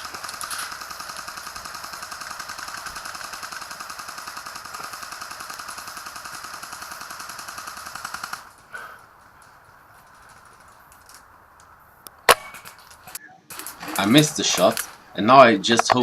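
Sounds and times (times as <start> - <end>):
airsoft guns firing full auto: 0.0 - 8.6.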